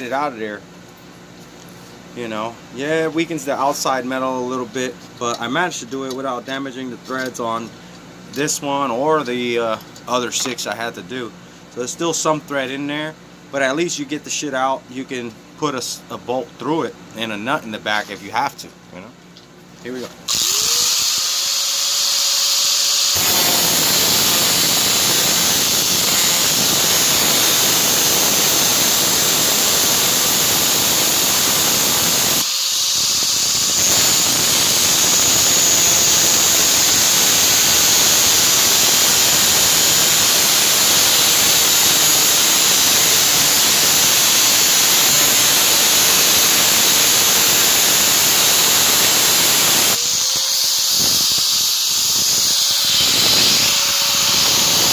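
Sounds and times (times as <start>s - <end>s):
angle grinder whine: 20.0s - 54.9s
angle grinder grinding metal: 20.3s - 54.9s.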